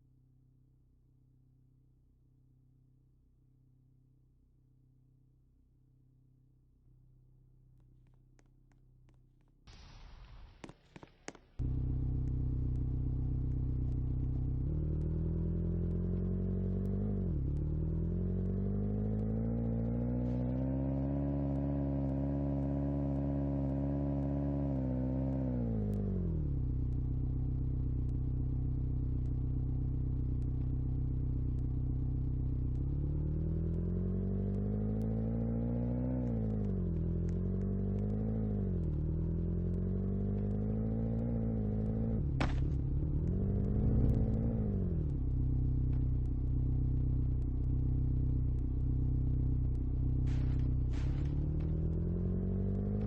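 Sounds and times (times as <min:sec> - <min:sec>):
engine running and revving: 0:11.3 - 0:53.0.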